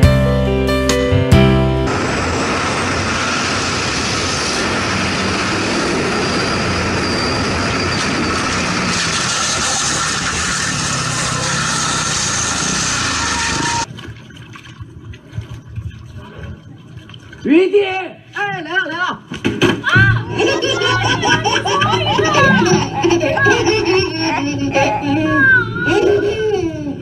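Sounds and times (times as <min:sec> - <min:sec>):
strong wind blowing: 0:01.9 - 0:09.6.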